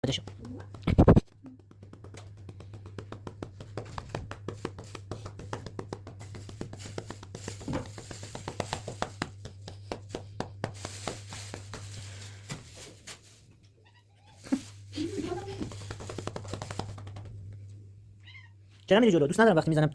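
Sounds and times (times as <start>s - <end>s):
hand patting a cat: 0.2s - 12.1s, 15.4s - 17.5s.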